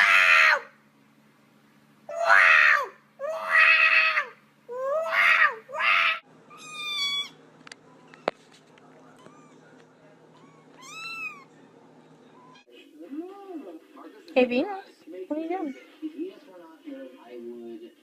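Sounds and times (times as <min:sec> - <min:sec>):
cat yowling: 0:00.0 - 0:00.7, 0:02.1 - 0:07.4, 0:10.4 - 0:11.5
cat meowing: 0:05.0 - 0:07.4, 0:09.2 - 0:09.6, 0:10.4 - 0:11.5.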